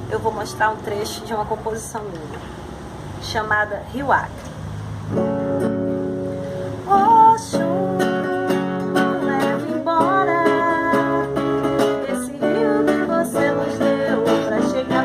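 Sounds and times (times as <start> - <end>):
acoustic guitar playing: 5.0 - 15.0
woman singing: 6.9 - 15.0.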